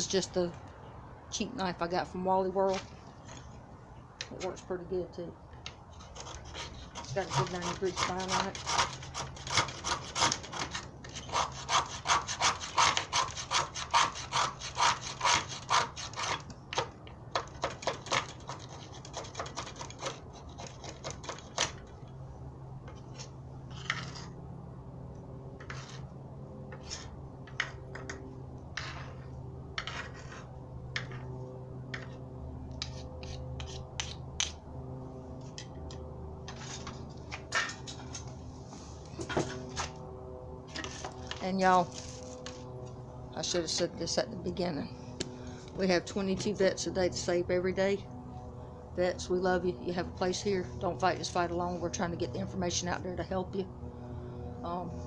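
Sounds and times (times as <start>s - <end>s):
knife scraping wood: 5.9s - 21.9s, 22.9s - 24.4s, 25.6s - 26.1s, 26.7s - 28.1s, 28.8s - 31.3s, 32.8s - 34.6s, 40.7s - 42.6s.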